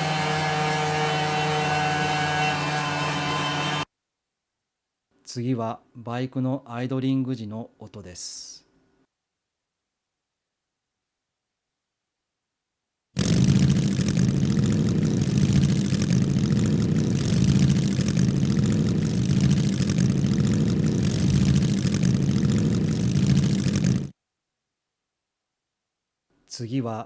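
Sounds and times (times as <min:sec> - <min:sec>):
motorcycle engine idling: 0:00.0 - 0:03.8, 0:13.2 - 0:24.1.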